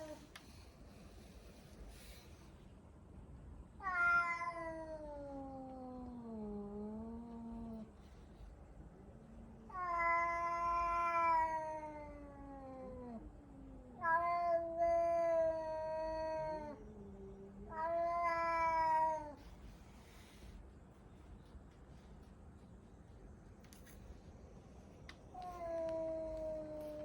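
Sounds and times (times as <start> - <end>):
cat meowing: 3.8 - 5.9, 9.7 - 13.2, 14.0 - 16.9, 17.7 - 19.4.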